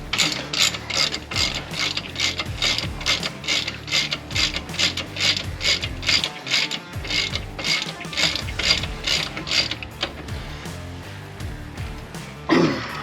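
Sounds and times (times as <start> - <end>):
socket ratchet clicking: 0.1 - 10.3.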